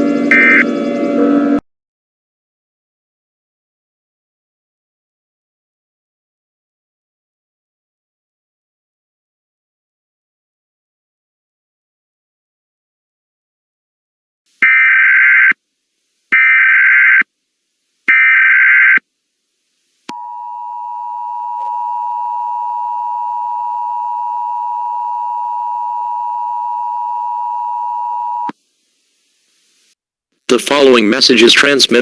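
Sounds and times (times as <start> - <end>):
data tone bursts: 0.0 - 1.4
two-tone attention signal: 0.0 - 1.6, 20.1 - 28.5.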